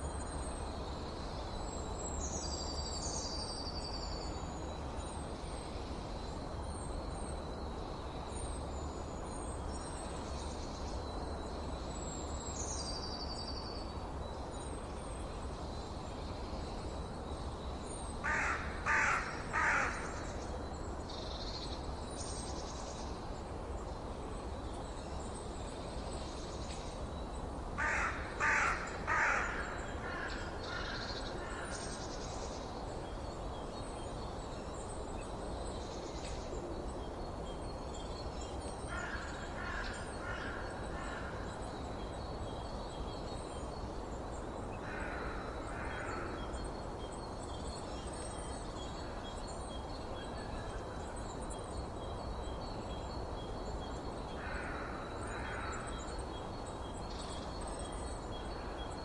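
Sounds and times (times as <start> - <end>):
steady background hiss: 0.0 - 59.0
bird cawing: 18.2 - 20.3, 27.8 - 31.9, 38.9 - 41.6, 44.8 - 46.5, 54.4 - 56.0.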